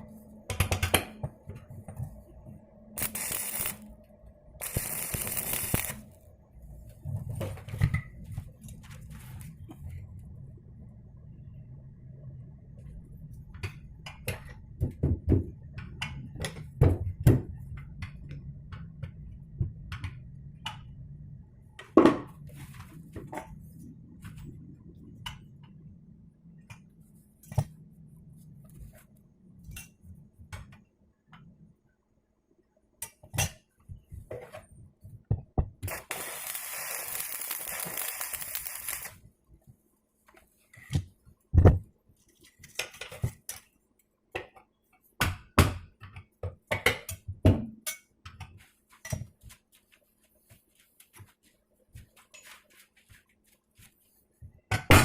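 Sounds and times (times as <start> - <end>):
steady hiss: 3.0 - 4.0, 4.6 - 6.2, 35.9 - 39.2.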